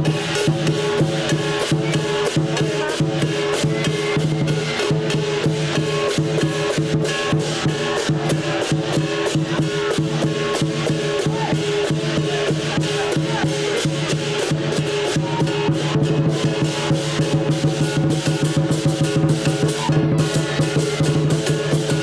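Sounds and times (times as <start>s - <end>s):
big drum beating: 0.0s - 22.0s
gongs and cymbals ringing: 0.0s - 22.0s.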